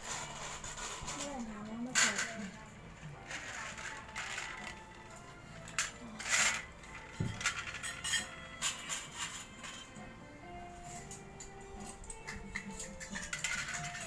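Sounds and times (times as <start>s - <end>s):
faint background music: 0.0s - 14.0s
spoons clinking on plates: 1.9s - 2.7s, 3.3s - 10.1s, 10.7s - 14.0s.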